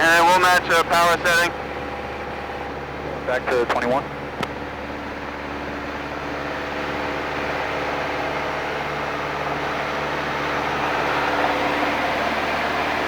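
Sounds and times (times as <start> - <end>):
light aircraft engine drone: 0.0 - 13.0.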